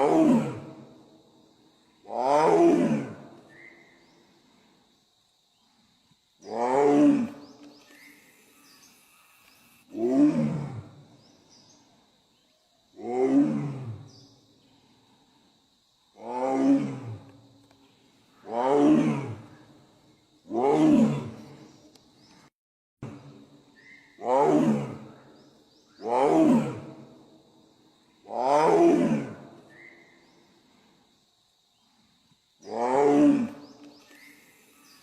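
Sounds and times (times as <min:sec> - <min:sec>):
big cat roaring: 0:02.1 - 0:03.2, 0:09.9 - 0:11.0, 0:13.0 - 0:14.0, 0:16.2 - 0:17.2, 0:18.5 - 0:19.4, 0:20.5 - 0:21.5, 0:24.2 - 0:25.0, 0:26.0 - 0:27.0, 0:28.3 - 0:29.4
faint high whine: 0:07.7 - 0:09.9.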